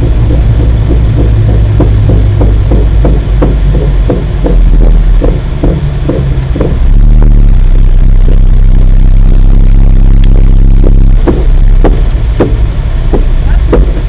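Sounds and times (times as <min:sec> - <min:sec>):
loose car wheel clunking: 0:00.0 - 0:06.9, 0:10.8 - 0:14.0
low drone of moving car: 0:00.0 - 0:14.0.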